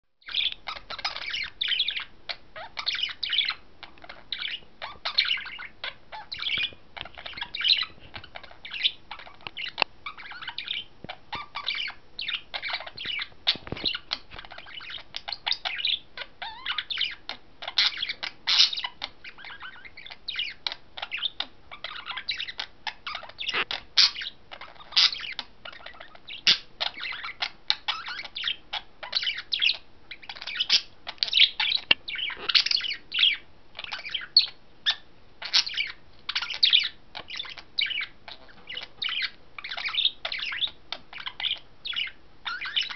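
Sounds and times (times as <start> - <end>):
budgerigar warbling: 0.3 - 42.9.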